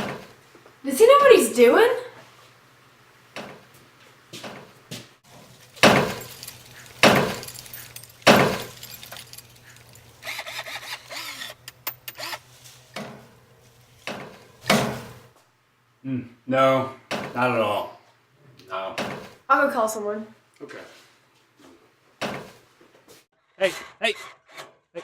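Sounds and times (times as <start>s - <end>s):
metallic bangs and clatters: 5.3s - 10.2s.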